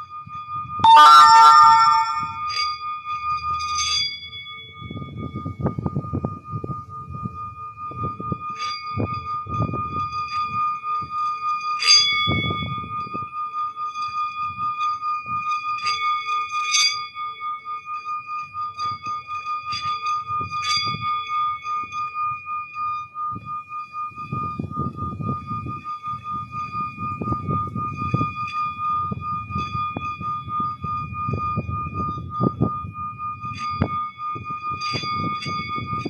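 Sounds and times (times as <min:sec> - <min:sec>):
singing bowl ringing: 0:00.8 - 0:02.5.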